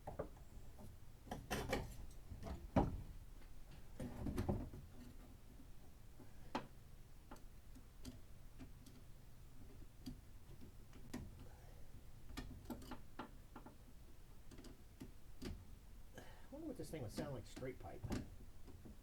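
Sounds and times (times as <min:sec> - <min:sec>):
light clicks and taps of tools: 0:06.2 - 0:11.5, 0:12.3 - 0:15.6.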